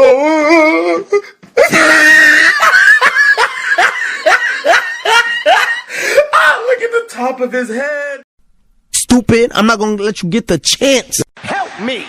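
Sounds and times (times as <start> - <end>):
loud scream: 1.6 - 3.1.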